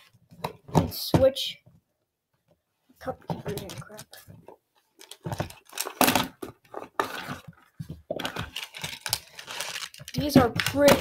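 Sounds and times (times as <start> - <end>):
plastic cups clattering: 3.0 - 11.0.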